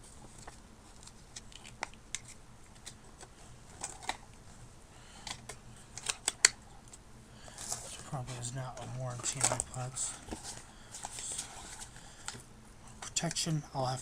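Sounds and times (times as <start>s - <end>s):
paper and plastic rustling: 7.5s - 12.4s.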